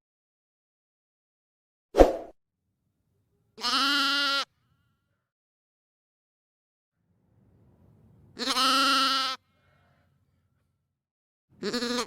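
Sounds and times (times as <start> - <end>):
sheep bleating: 3.6 - 4.5, 8.4 - 9.5, 11.6 - 12.0.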